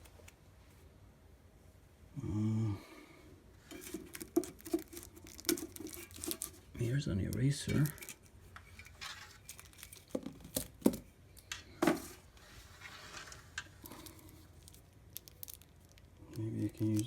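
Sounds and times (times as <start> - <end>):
rustling: 3.6 - 17.0
small objects clicking and knocking: 3.7 - 12.0, 13.2 - 17.0.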